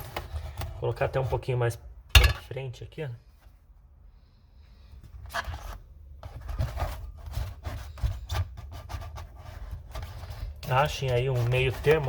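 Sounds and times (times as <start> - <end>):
car jack scraping over foam: 6.5 - 12.0.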